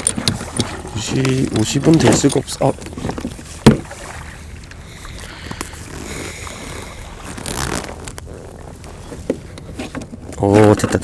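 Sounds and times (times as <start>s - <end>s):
water lapping against kayak hull: 0.0s - 11.0s
light knock on hull: 2.8s - 4.2s
scraping rustle: 5.2s - 10.9s.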